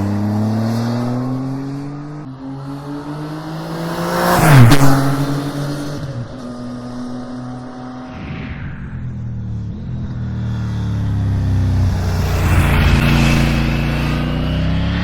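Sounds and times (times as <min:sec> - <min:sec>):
rush of noise with falling pitch: 0:07.7 - 0:15.0.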